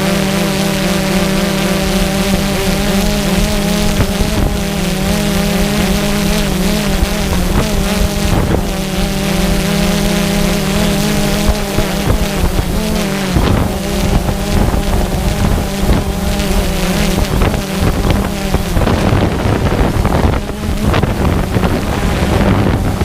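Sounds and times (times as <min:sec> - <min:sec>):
drone propellers humming: 0:00.0 - 0:23.0.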